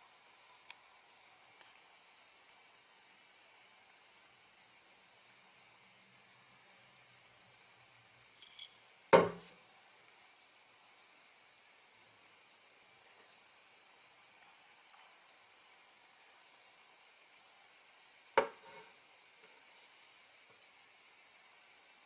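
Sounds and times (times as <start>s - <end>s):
crickets chirping: 0.0s - 22.0s
sharp knock: 9.2s - 9.5s.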